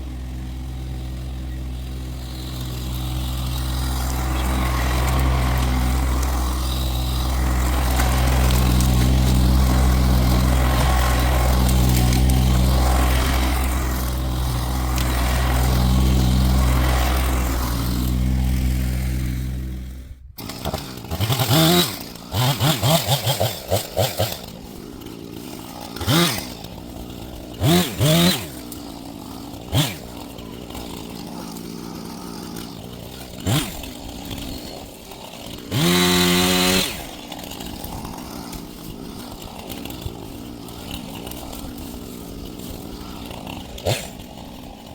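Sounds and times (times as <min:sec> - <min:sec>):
chainsaw revving: 0:00.0 - 0:44.9
low steady engine: 0:00.0 - 0:44.9.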